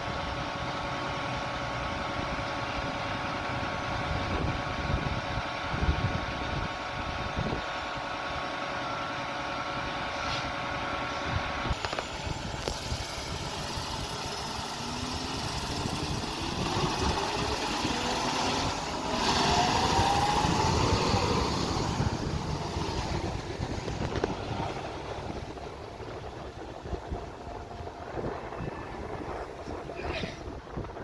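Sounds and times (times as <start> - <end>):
vehicle engine accelerating: 8.8 - 29.9.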